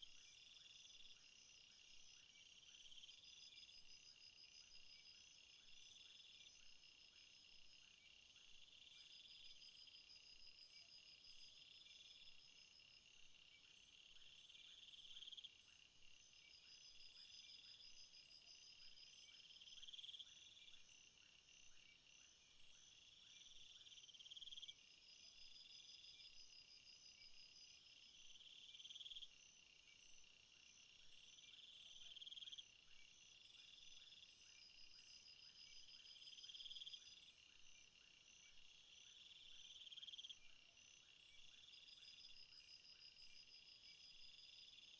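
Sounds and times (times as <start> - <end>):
rapid high insect chirping: 14.4 - 22.2, 22.8 - 44.9.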